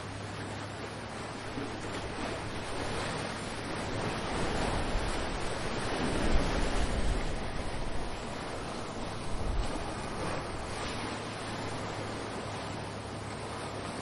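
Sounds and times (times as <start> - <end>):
ocean surf washing in: 0.0 - 14.0
wind buffeting microphone: 1.3 - 12.6.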